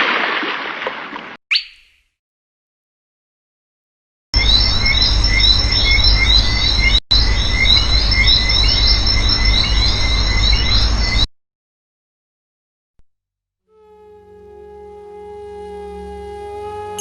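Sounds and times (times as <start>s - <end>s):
birds chirping: 1.5s - 2.0s
insect drone: 13.8s - 17.0s.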